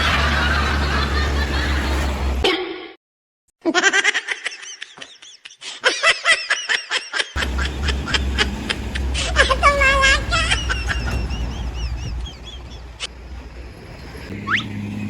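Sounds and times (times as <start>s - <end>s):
person laughing: 0.0s - 2.1s, 3.6s - 13.2s
steady low hum: 7.4s - 15.0s.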